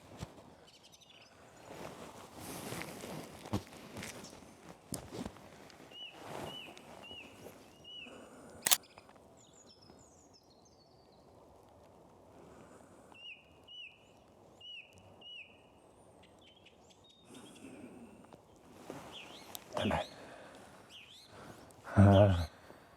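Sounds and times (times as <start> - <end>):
sharp click: 8.7 - 9.0.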